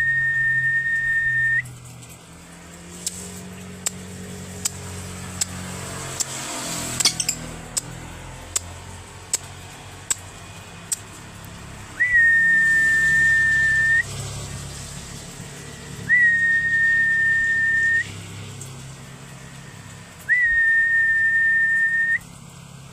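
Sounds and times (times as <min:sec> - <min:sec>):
long high whistle notes: 0:00.0 - 0:01.7, 0:12.0 - 0:14.2, 0:16.1 - 0:18.2, 0:20.3 - 0:22.2
sharp clicks: 0:03.8 - 0:04.0, 0:04.6 - 0:06.4, 0:07.0 - 0:10.3, 0:10.9 - 0:11.2.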